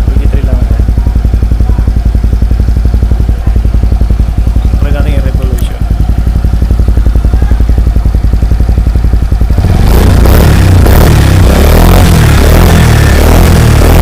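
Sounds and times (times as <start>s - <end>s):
scooter engine idling and revving: 0.0s - 14.0s.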